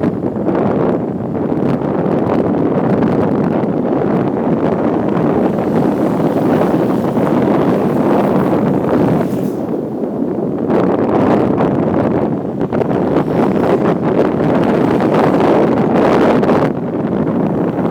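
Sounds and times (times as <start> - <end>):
wind buffeting microphone: 0.0 - 17.9
motorcycle engine running: 3.0 - 10.2.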